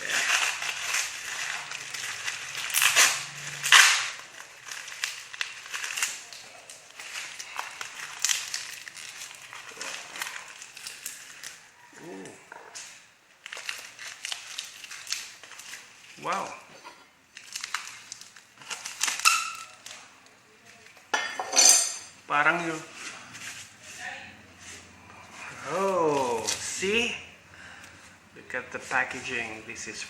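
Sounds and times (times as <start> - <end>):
packaging crackling and tearing: 0.0 - 16.6, 17.3 - 21.0, 25.6 - 27.1
packaging ripping: 0.0 - 16.6, 17.3 - 20.1, 25.6 - 27.0.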